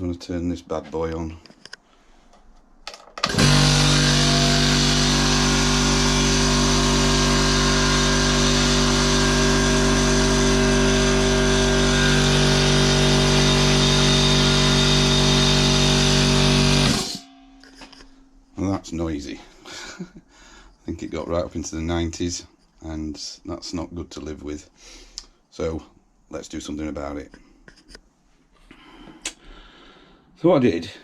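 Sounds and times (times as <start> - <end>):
air compressor running: 3.2 - 17.3.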